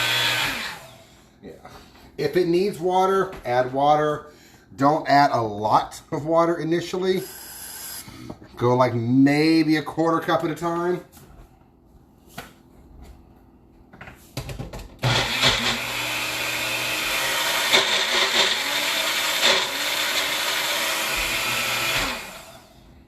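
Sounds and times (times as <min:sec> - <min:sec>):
blender running: 0:00.0 - 0:01.2, 0:15.0 - 0:22.9.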